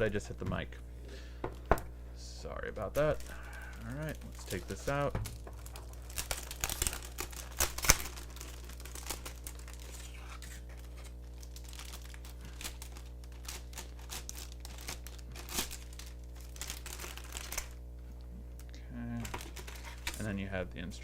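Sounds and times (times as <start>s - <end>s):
packaging crinkling: 2.9s - 17.8s, 18.5s - 20.3s.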